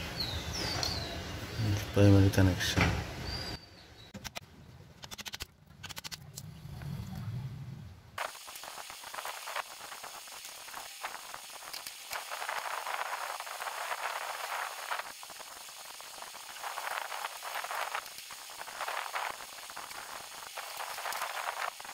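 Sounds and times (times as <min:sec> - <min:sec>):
clicks: 0:04.1 - 0:07.2
welding arc crackling: 0:08.2 - 0:21.9
welding machine hum: 0:08.2 - 0:21.9.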